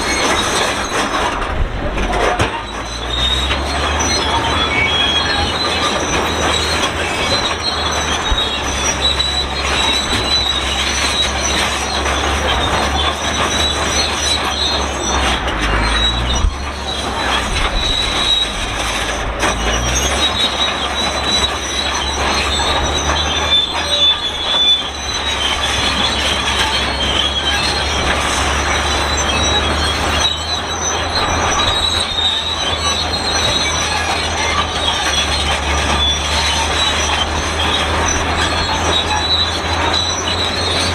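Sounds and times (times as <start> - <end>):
bulldozer metal squealing and creaking: 0.0 - 40.9
diesel engine running: 0.0 - 40.9.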